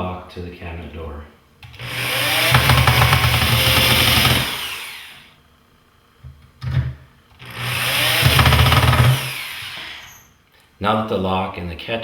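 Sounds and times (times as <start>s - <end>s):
drill driving a screw: 1.7s - 5.3s, 7.4s - 10.3s.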